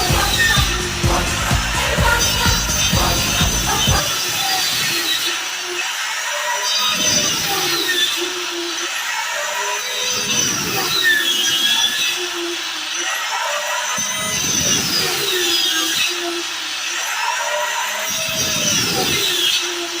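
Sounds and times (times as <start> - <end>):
electric power tool running: 0.0 - 20.0.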